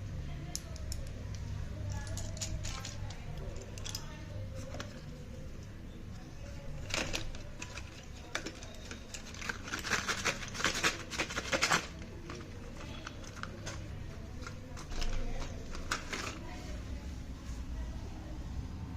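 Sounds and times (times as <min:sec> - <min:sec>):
crisp crackling and clicking: 0:06.1 - 0:16.5.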